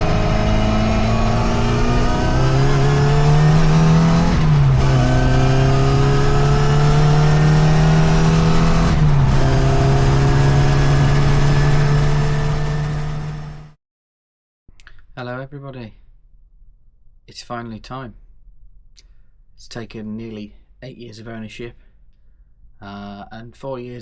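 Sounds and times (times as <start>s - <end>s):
car engine accelerating: 0.0s - 13.8s.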